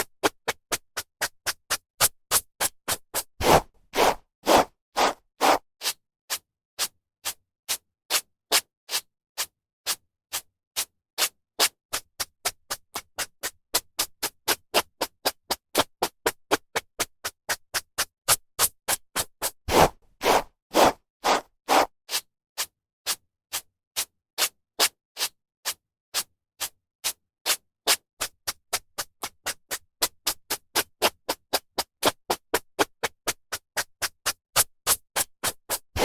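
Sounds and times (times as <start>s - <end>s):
hairbrush strokes through hair: 3.4s - 5.6s, 19.7s - 21.9s.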